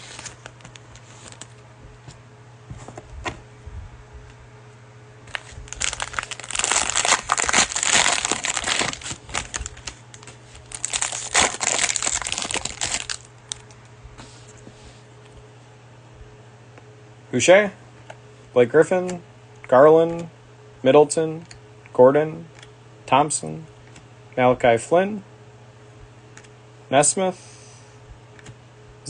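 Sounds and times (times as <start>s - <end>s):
plastic wrapper crinkling and tearing: 0.1s - 1.6s, 5.3s - 13.8s.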